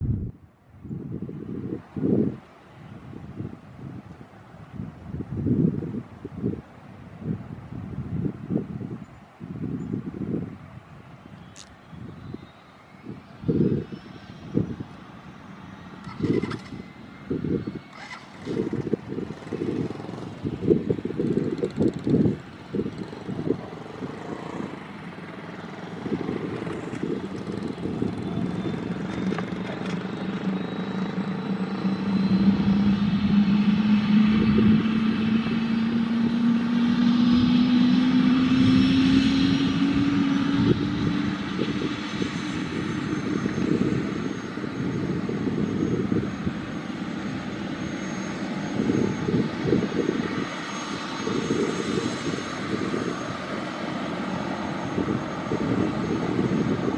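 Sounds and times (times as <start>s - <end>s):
helicopter turbine whine: 11.5s - 56.9s
helicopter rotor beat: 14.4s - 36.8s, 38.7s - 56.9s.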